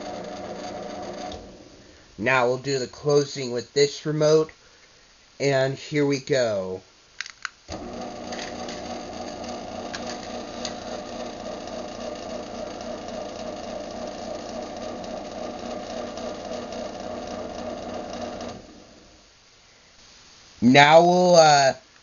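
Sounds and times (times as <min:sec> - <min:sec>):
garage door opener motor humming: 0:00.0 - 0:02.2, 0:07.7 - 0:19.3.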